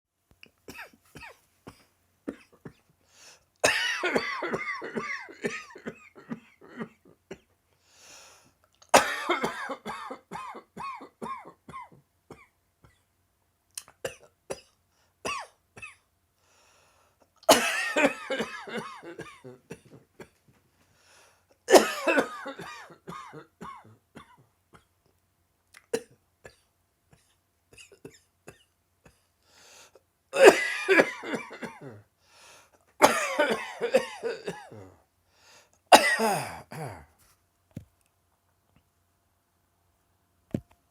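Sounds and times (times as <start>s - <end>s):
person coughing: 3.6s - 7.5s, 8.9s - 13.0s, 17.4s - 20.4s, 21.7s - 24.9s, 30.4s - 32.0s, 33.0s - 35.0s, 35.9s - 37.1s.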